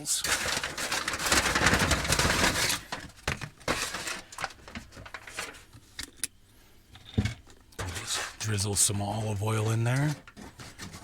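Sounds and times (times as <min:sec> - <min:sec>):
aluminium foil crinkling: 0:00.2 - 0:05.8, 0:07.8 - 0:11.0
vegetable pieces tapping in foil: 0:00.3 - 0:05.6.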